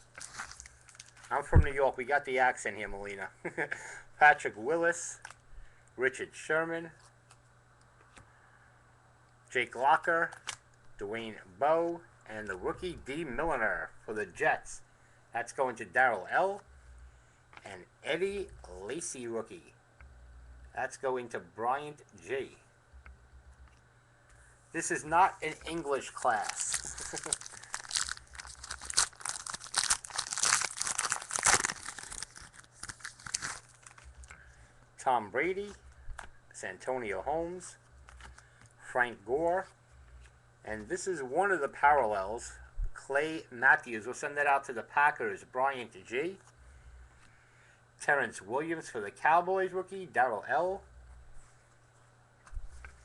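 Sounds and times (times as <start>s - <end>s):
foil wrapper tearing and crinkling: 0.0s - 1.4s, 25.5s - 34.3s
cards being handled: 25.2s - 34.4s, 37.9s - 38.8s.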